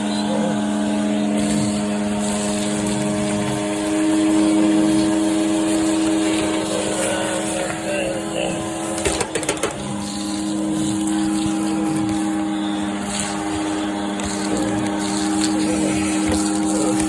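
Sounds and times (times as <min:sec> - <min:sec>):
lower hum: 0:00.0 - 0:17.0
vacuum cleaner motor running: 0:00.0 - 0:17.0
knocks: 0:09.0 - 0:09.9.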